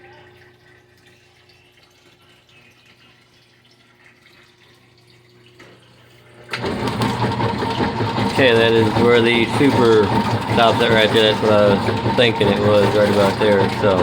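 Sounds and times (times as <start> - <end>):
water running into washer tub: 0.0 - 14.0
washing machine motor starting: 5.7 - 14.0.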